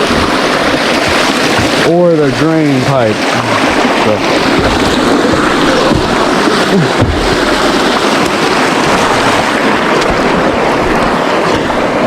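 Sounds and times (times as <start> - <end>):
creek water rushing: 0.0 - 12.0.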